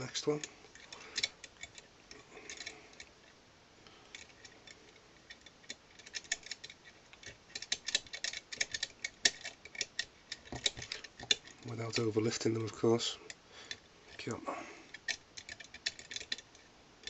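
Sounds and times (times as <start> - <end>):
lock pick clicking in lock: 4.1 - 11.6, 14.9 - 16.6.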